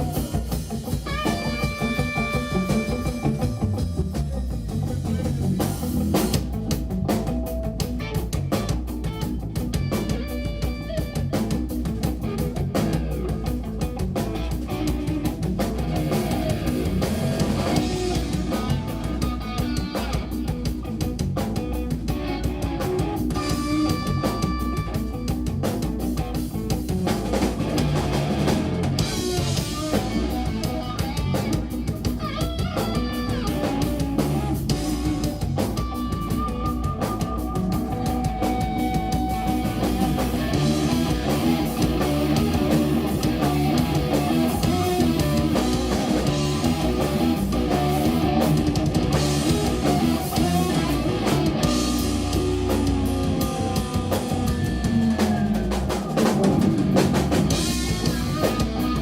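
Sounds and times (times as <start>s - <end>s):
drum kit: 0.0s - 59.0s
electric bass: 0.0s - 59.0s
electric guitar lead lines: 0.0s - 59.0s.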